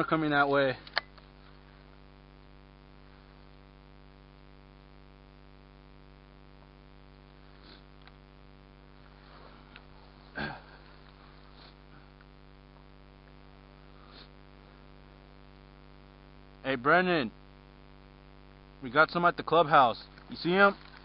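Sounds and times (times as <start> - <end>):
low electrical hum: 0.0 - 21.0
faint soft rustles: 8.9 - 11.9.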